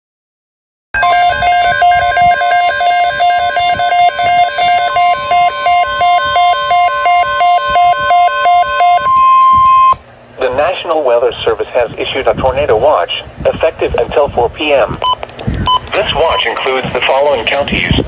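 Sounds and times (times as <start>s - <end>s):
steady high alarm tone: 1.0s - 10.0s
warbling electronic alert: 1.0s - 10.0s.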